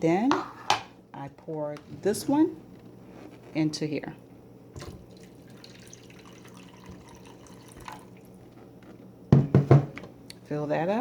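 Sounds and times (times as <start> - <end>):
containers knocking: 9.4 - 10.0.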